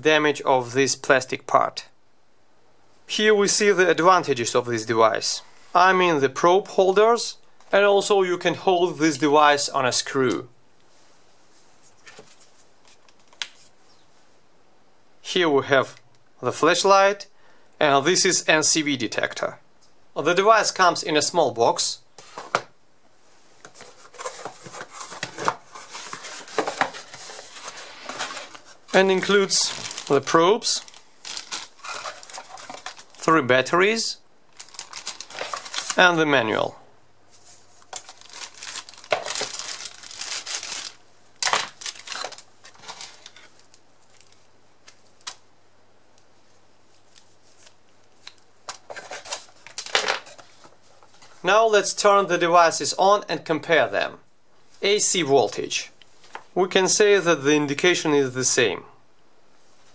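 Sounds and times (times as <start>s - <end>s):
packaging rustling and crinkling: 23.6s - 33.3s, 34.5s - 36.0s, 37.3s - 45.4s, 47.0s - 51.4s.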